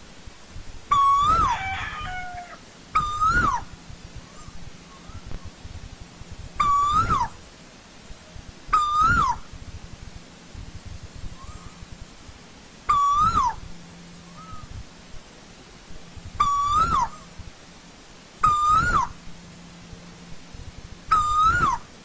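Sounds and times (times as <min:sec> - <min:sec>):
bird calling: 0:00.9 - 0:05.6, 0:06.6 - 0:07.4, 0:08.7 - 0:09.5, 0:11.3 - 0:11.9, 0:12.9 - 0:14.8, 0:16.4 - 0:17.4, 0:18.4 - 0:19.3, 0:21.1 - 0:21.9.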